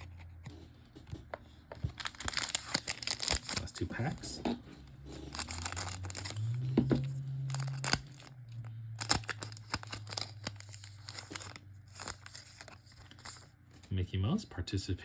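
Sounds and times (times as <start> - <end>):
card pack wrapper tearing: 1.8 - 4.4, 5.2 - 13.5
low hum: 4.6 - 13.1.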